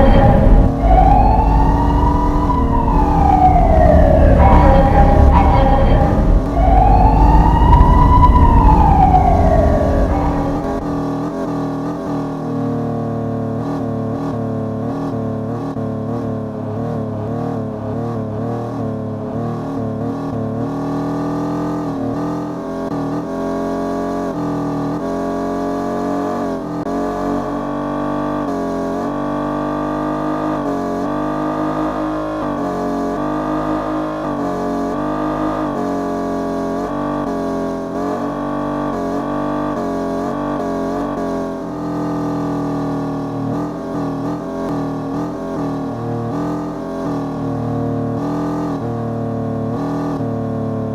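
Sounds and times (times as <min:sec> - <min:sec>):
car engine at highway speed: 0:00.0 - 0:50.9.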